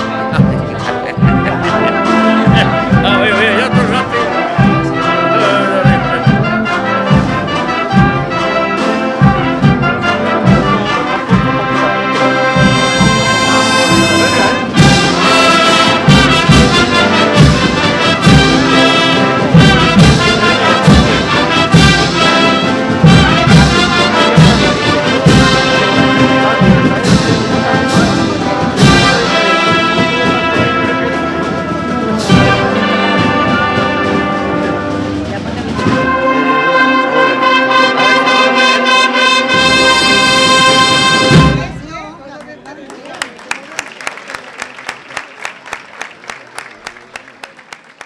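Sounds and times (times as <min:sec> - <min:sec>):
steady drum beat: 0:00.0 - 0:36.9, 0:38.9 - 0:42.1
brass band march: 0:00.0 - 0:42.2.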